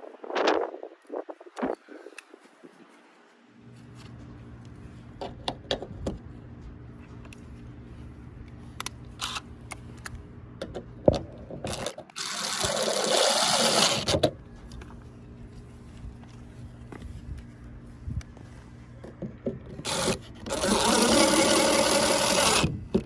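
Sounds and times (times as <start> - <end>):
small power tool whirring: 11.7 - 14.2, 19.8 - 23.0.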